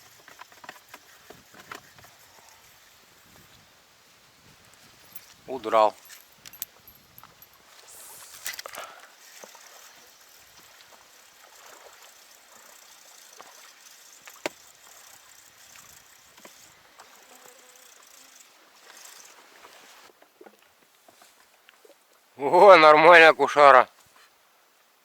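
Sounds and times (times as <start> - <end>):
water lapping around boat: 8.6 - 22.2.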